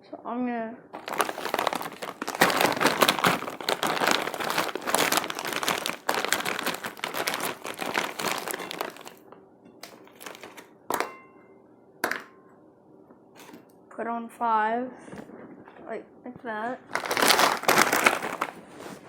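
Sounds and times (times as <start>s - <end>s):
plastic packaging crinkling: 0.9s - 9.2s, 9.8s - 11.0s, 16.9s - 19.0s.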